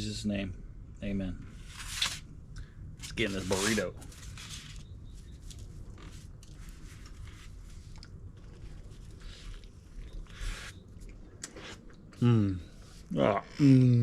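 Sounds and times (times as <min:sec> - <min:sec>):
person chewing food: 0:05.6 - 0:12.2.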